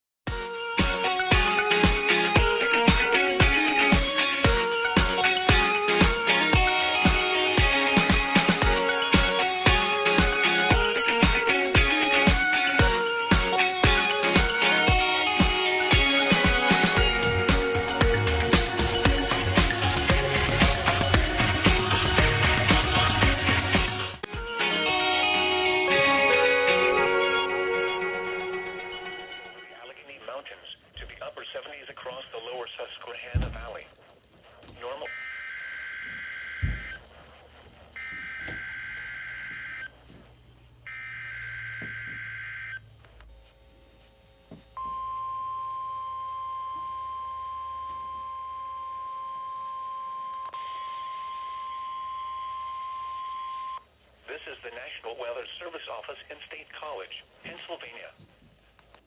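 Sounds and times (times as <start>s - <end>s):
upbeat pop music with drums: 0.3s - 24.6s
steady warning alarm tone: 33.2s - 44.0s.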